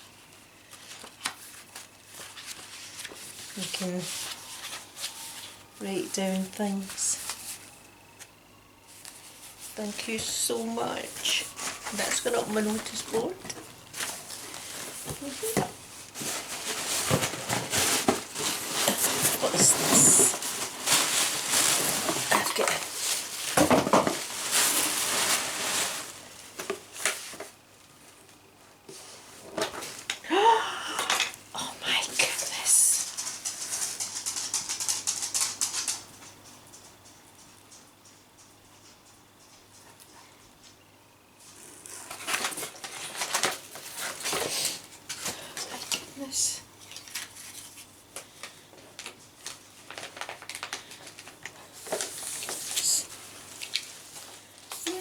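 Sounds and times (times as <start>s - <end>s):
gift wrapping rustling: 0.3s - 7.8s, 8.9s - 28.3s, 41.4s - 55.0s.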